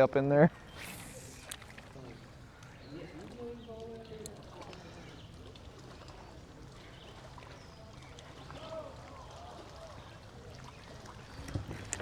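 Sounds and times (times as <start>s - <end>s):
water trickling and lapping: 0.0s - 12.0s
distant voice: 0.5s - 11.0s.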